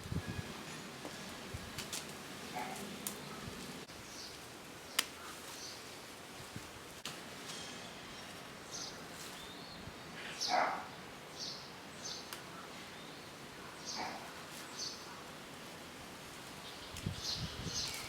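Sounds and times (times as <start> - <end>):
faint outdoor air hiss: 0.0 - 18.0
birds chirping: 2.4 - 5.9, 7.5 - 15.4, 16.6 - 18.0.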